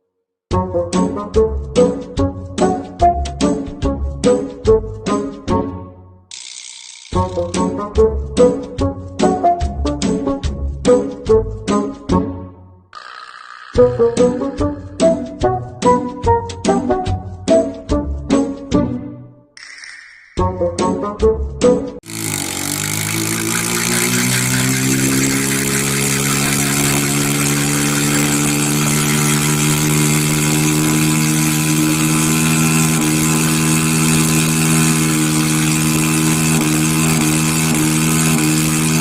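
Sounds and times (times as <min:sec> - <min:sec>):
engine running steadily: 0:22.0 - 0:39.0.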